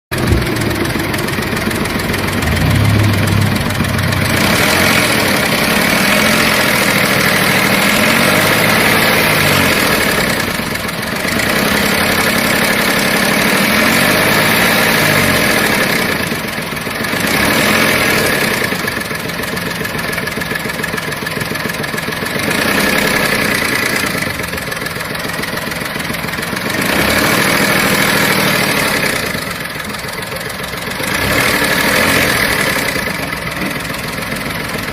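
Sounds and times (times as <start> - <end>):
car engine revving: 0.1 - 16.4, 30.8 - 34.0.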